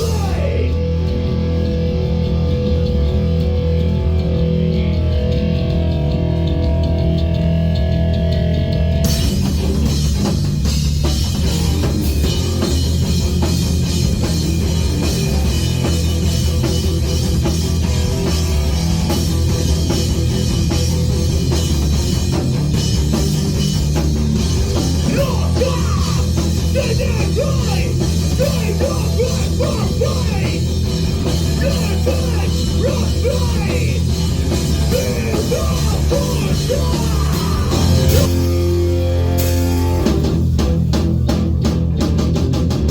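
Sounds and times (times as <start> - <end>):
shouted vocal: 0.0 - 0.8, 25.1 - 30.6, 31.6 - 34.1, 34.8 - 38.3
hardcore punk music: 0.0 - 42.9.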